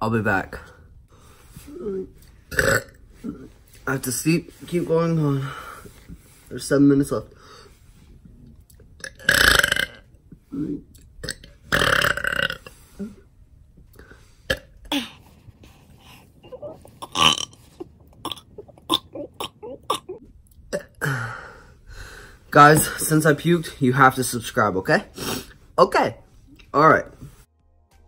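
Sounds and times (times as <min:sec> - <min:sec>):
person burping: 0:02.5 - 0:03.4, 0:09.0 - 0:13.2, 0:14.5 - 0:15.2, 0:16.5 - 0:21.3.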